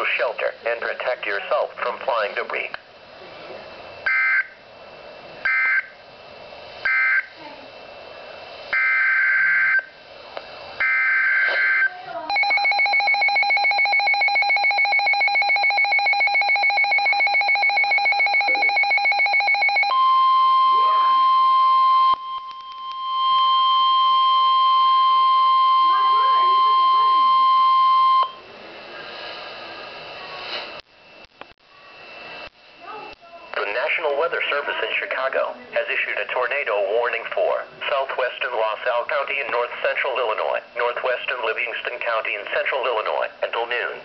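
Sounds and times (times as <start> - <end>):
steady weather warning alarm tone: 4.0 - 4.6, 5.4 - 6.0, 6.8 - 7.3, 8.7 - 10.0, 10.8 - 28.5
rapid pulsing alarm beeps: 4.1 - 4.6, 5.5 - 6.0, 6.8 - 7.3, 8.7 - 10.0, 10.8 - 28.4.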